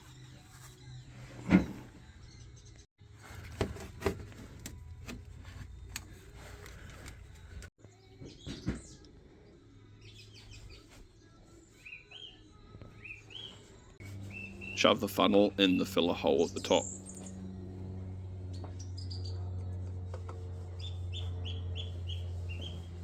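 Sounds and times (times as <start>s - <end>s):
birds chirping: 13.0s - 23.0s.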